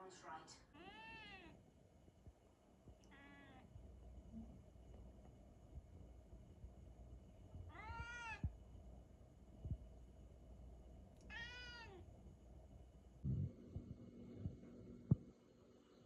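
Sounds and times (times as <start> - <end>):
cat meowing: 0.8 - 1.6, 3.0 - 3.7, 7.7 - 8.5, 11.2 - 12.0.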